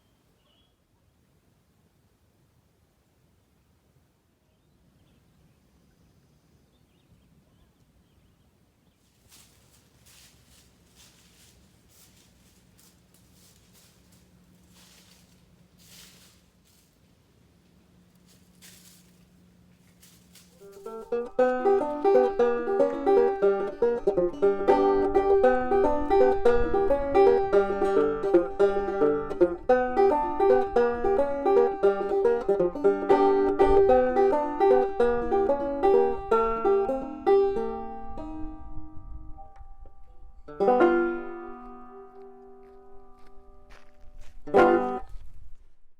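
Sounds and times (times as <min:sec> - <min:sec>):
plucked string melody: 0:20.3 - 0:43.8, 0:44.5 - 0:45.1
strummed chord ringing: 0:20.6 - 0:43.8.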